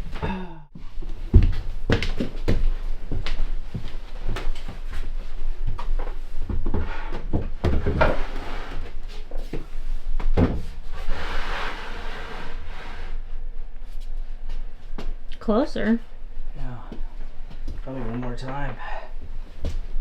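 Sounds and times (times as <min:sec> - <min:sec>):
wood scraping slide: 0:11.0 - 0:13.2.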